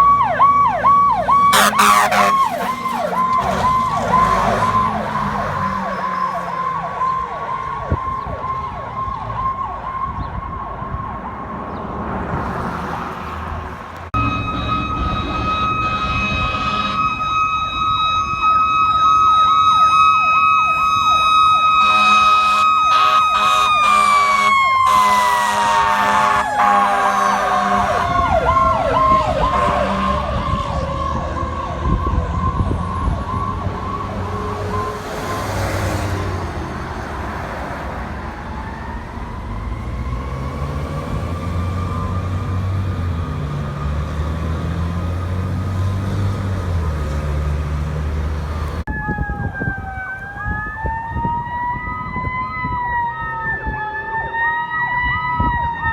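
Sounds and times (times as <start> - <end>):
heavy vehicle engine rumble: 0.0 - 8.8
yelping siren: 0.0 - 11.9, 14.2 - 46.0, 48.6 - 55.9
steady high siren: 0.0 - 13.0, 14.1 - 46.8, 48.2 - 55.9
air horn blasts: 1.4 - 4.4, 14.2 - 17.3, 21.7 - 28.6, 29.4 - 30.6.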